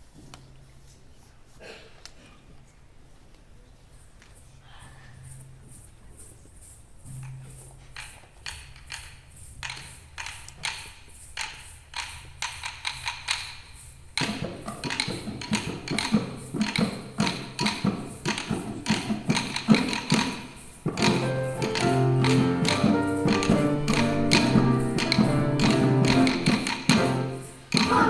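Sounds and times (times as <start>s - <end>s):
children tapping hand percussion: 3.9s - 28.0s.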